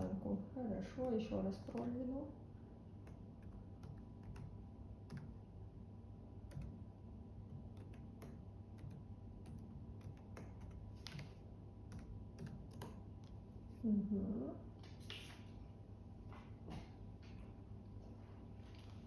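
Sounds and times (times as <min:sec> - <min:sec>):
laptop keyboard typing clicks: 0:03.0 - 0:05.4, 0:06.4 - 0:06.8, 0:07.5 - 0:13.4.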